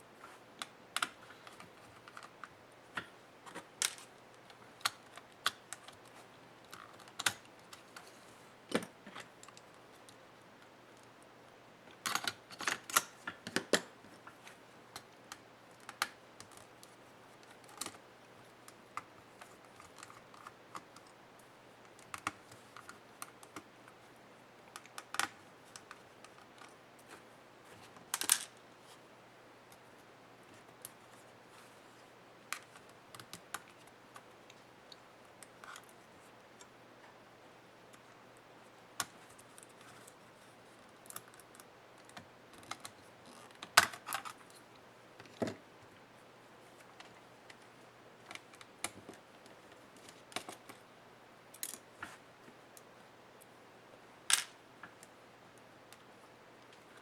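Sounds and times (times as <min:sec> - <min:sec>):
plastic parts snapping: 0:54.3 - 0:54.6.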